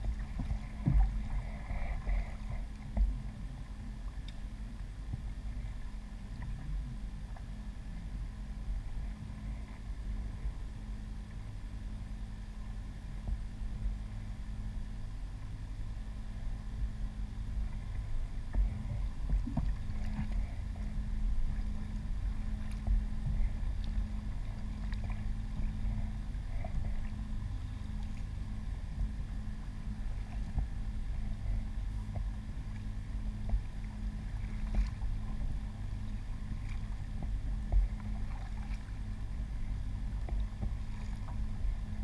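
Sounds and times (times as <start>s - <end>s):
faint hum: 0.0s - 42.0s
water and wind against hull: 0.0s - 42.0s
light ticks: 4.1s - 4.5s.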